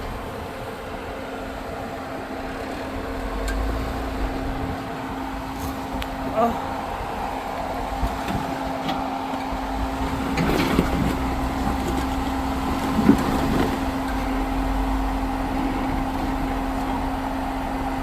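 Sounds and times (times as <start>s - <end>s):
vehicle engine running: 0.0s - 18.0s.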